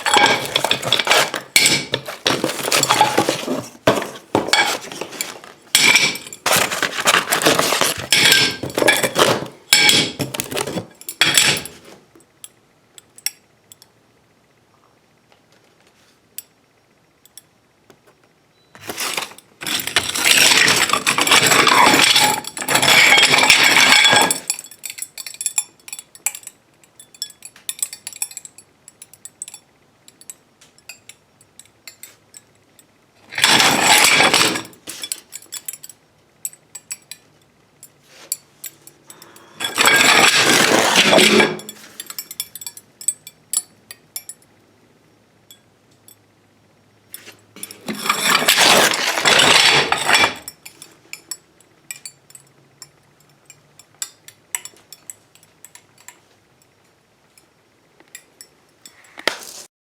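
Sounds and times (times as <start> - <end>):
glass tile crackling: 0.0 - 11.8, 18.8 - 31.2, 33.3 - 35.9, 37.8 - 44.3, 47.2 - 52.3.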